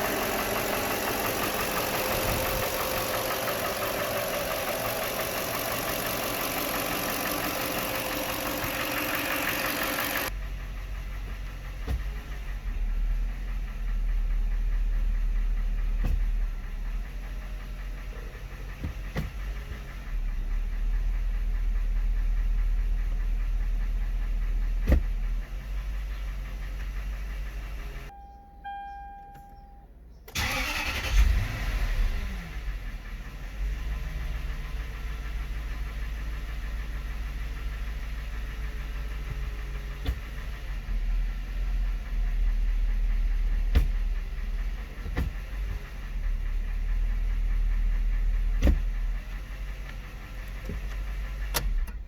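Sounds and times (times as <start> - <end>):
engine cranking and restarting: 0.0 - 28.1, 30.3 - 52.0
car engine idling: 0.0 - 52.0
sharp engine knocks: 11.3 - 12.4, 15.9 - 16.5, 18.7 - 19.9, 24.8 - 25.3, 39.2 - 40.6, 43.6 - 44.2, 44.8 - 46.0, 48.5 - 49.0
brief tone: 28.1 - 29.9.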